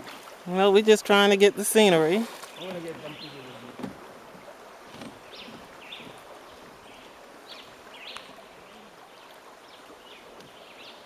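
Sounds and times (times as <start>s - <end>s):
running water hiss: 0.0s - 11.0s
birds chirping: 2.4s - 11.0s.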